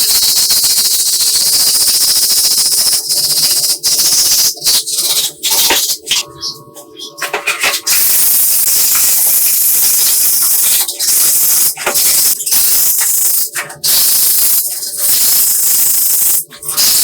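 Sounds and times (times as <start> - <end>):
loud hissing spray: 7.9 - 17.0.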